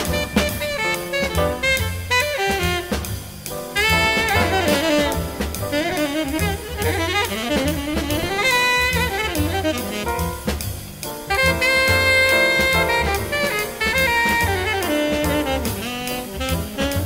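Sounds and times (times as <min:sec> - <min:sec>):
saxophone melody: 0:00.0 - 0:10.6, 0:11.3 - 0:17.0
drum kit beat: 0:00.0 - 0:17.0.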